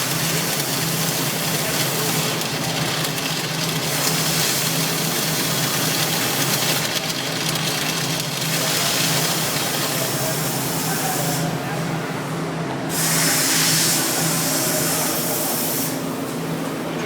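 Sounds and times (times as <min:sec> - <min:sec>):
low hum from welder: 0:00.0 - 0:06.8
welding arc crackling and hissing: 0:00.0 - 0:11.6, 0:12.9 - 0:16.0.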